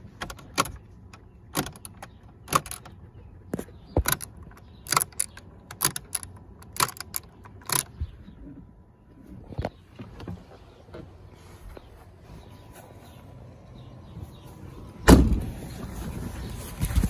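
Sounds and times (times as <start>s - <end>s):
soft ignition clicks: 0.1s - 8.1s.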